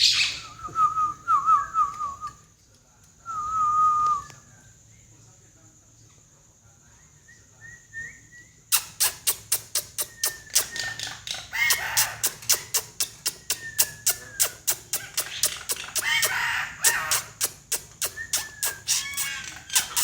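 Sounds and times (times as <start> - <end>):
harsh bird squawks: 0.0 - 0.4, 8.7 - 20.0
bird whistled notes: 7.2 - 20.0
bird calling with rapid clicks: 8.7 - 20.0.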